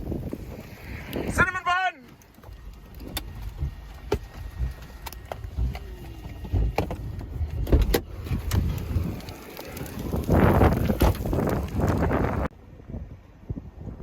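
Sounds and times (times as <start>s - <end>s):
vehicle cabin rumble: 2.2s - 12.5s.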